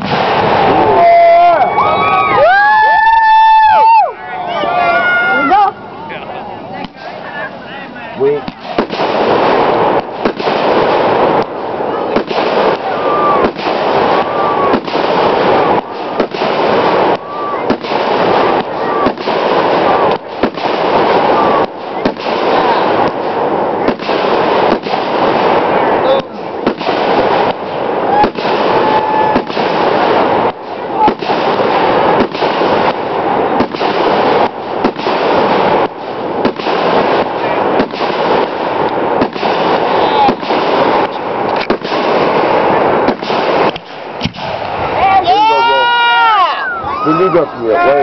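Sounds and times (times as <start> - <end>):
fireworks bangs: 0.0 - 48.0
fireworks crackling: 0.0 - 48.0
firework whistle: 12.7 - 21.7.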